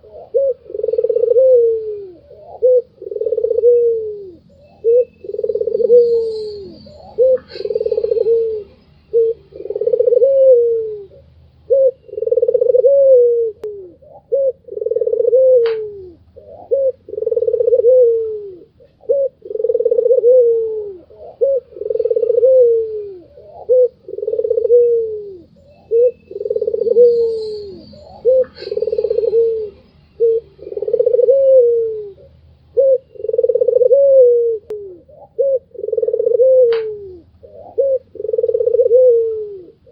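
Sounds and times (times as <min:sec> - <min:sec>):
dove cooing: 0:00.0 - 0:39.9
small birds chirping: 0:00.0 - 0:39.9.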